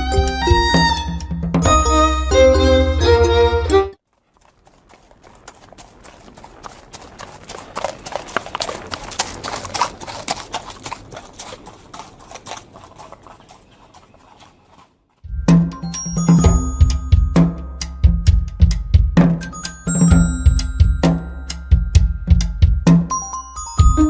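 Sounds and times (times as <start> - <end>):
instrumental music: 0.0 - 4.0, 15.3 - 24.0
hooves clopping: 4.0 - 24.0.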